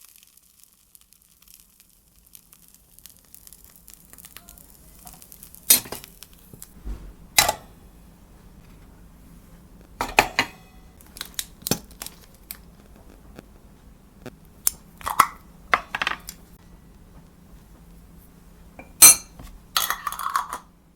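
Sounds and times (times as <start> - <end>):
utensils clinking on cookware: 5.7 - 6.1, 7.4 - 7.7, 10.0 - 11.0, 18.8 - 20.7.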